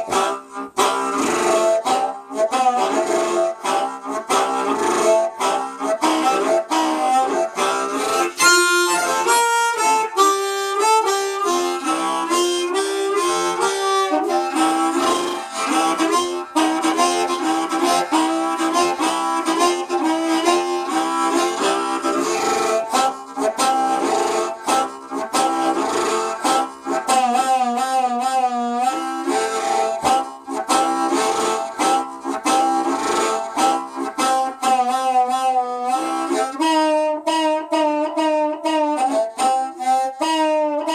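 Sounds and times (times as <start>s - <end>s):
harmonica melody: 0.0s - 40.9s.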